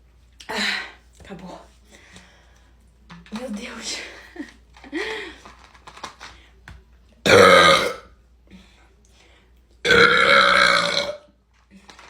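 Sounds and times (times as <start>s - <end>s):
woman burping loudly: 7.3s - 8.1s, 9.8s - 11.2s.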